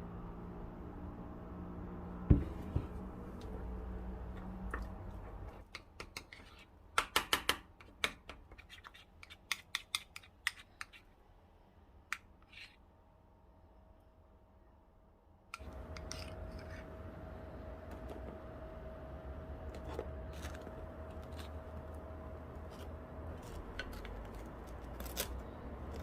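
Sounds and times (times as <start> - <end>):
low hum: 15.6 - 26.0.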